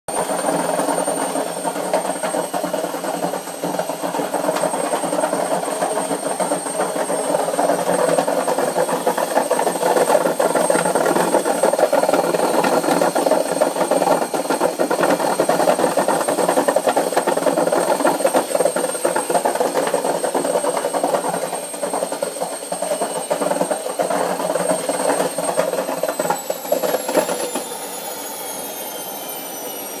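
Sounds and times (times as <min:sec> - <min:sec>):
washing machine rattling drone: 0:00.1 - 0:30.0
thin high whine: 0:26.0 - 0:30.0.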